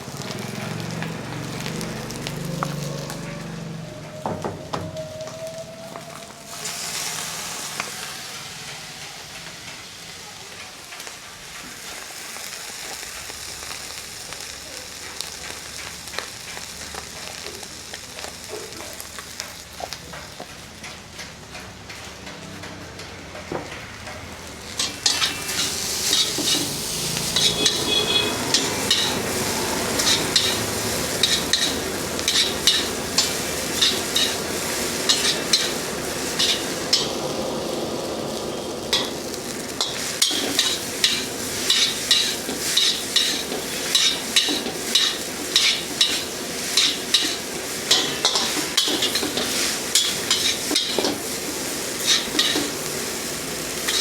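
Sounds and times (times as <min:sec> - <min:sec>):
food sizzling in a wok: 0:00.0 - 0:22.7, 0:23.4 - 0:54.0
metal ladle scraping wok: 0:24.7 - 0:37.2, 0:39.8 - 0:54.0.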